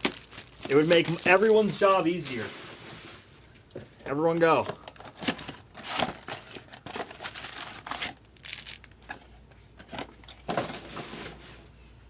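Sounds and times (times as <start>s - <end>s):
packaging crinkling and tearing: 0.0s - 3.6s, 5.2s - 9.1s.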